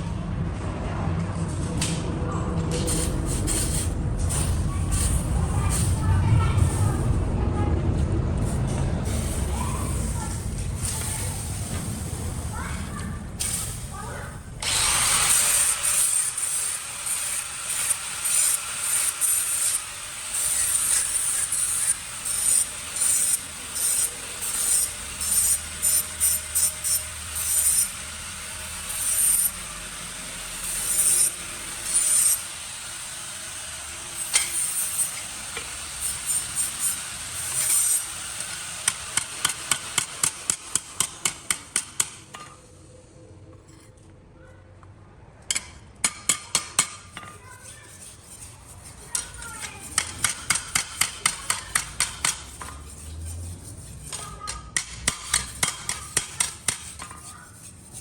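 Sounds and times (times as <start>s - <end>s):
hammer striking metal: 38.8s - 42.6s, 45.5s - 47.4s, 49.2s - 52.8s, 54.1s - 57.4s
scraping: 47.0s - 54.7s.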